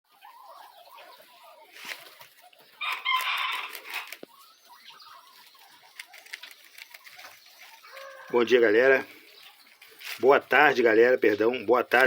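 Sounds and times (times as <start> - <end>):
chickens clucking: 0.1 - 12.0
rooster crowing: 2.8 - 4.1, 7.9 - 8.4.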